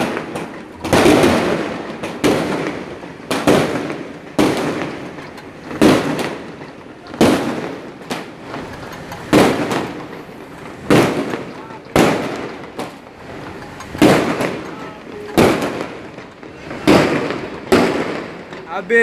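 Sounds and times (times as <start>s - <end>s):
fireworks bangs: 0.0s - 19.0s.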